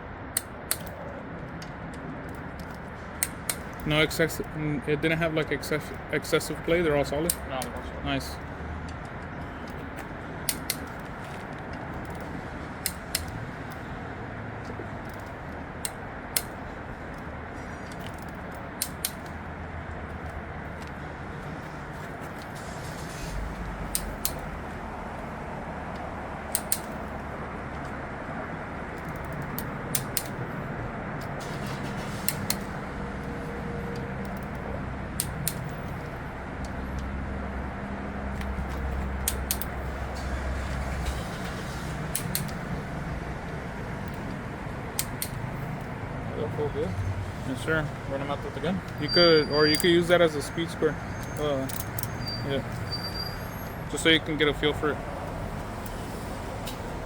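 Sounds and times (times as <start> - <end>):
steady background noise: 0.0 - 57.0
metallic clicks of tools and parts: 0.3 - 4.5, 8.8 - 13.9, 15.0 - 17.3, 17.9 - 19.4, 23.8 - 24.6, 26.5 - 27.2, 29.0 - 30.4, 31.2 - 32.8, 34.2 - 37.1, 38.3 - 39.8, 41.0 - 42.6, 45.0 - 45.9, 51.2 - 52.8.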